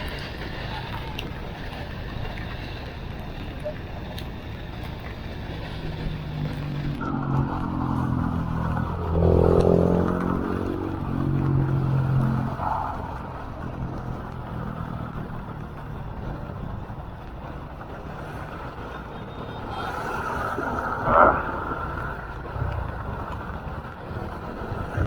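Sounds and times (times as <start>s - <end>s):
steady rushing noise: 0.0s - 25.0s
vehicle engine revving: 5.4s - 25.0s.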